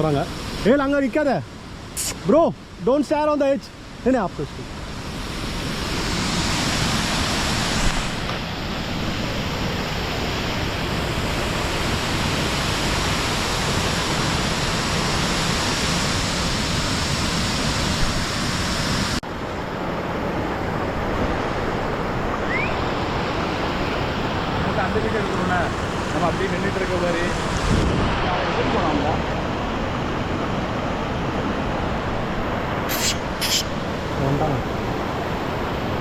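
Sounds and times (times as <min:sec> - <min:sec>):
waterfall rushing: 0:20.7 - 0:36.0.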